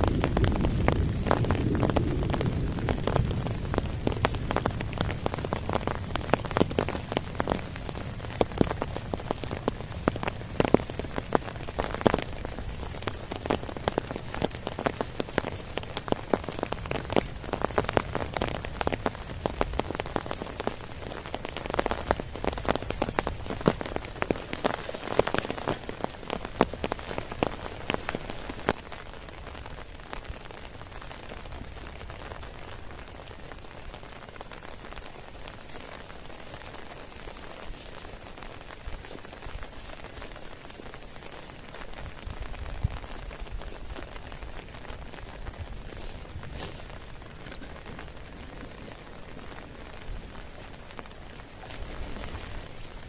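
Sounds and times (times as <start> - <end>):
rain falling: 0.0 - 53.0
raindrops tapping close by: 0.0 - 53.0.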